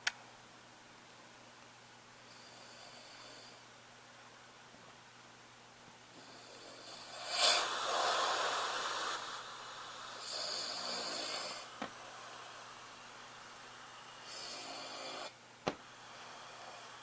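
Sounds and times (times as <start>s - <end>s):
man snoring: 6.2s - 13.0s, 14.2s - 15.3s, 15.9s - 17.0s
hissing breath: 6.2s - 17.0s.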